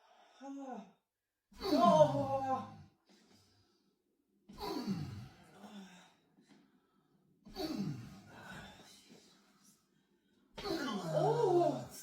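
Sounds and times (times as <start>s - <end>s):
person groaning: 1.6s - 2.6s, 10.7s - 12.0s.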